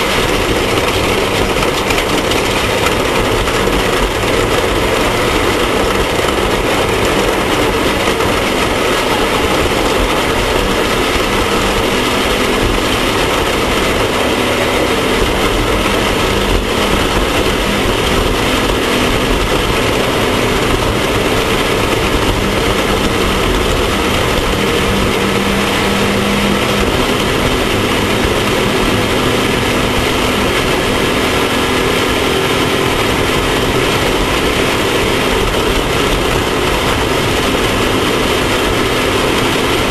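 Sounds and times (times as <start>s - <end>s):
race vehicle engine running: 0.0s - 39.9s
terrain noise: 0.0s - 39.9s
wind rushing: 0.0s - 39.9s.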